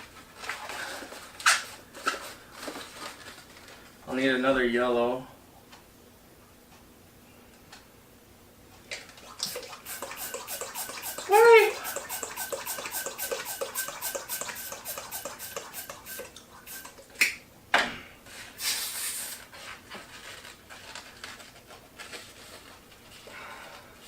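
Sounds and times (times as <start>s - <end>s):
balloons squeaking and rubbing: 9.2s - 17.0s
brief hiss: 18.6s - 19.5s.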